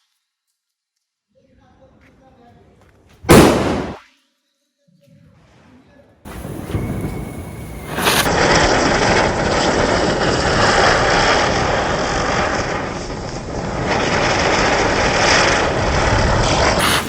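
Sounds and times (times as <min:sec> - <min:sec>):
ground firework rushing hiss: 0:06.3 - 0:17.0.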